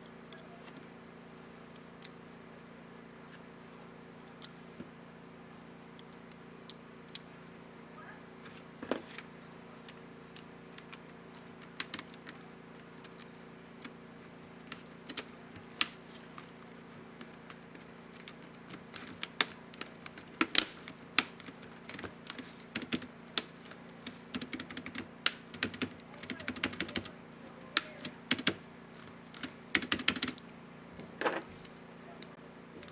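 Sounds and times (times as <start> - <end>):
faint steady hum: 0.0 - 32.9
laptop keyboard typing: 9.9 - 30.5.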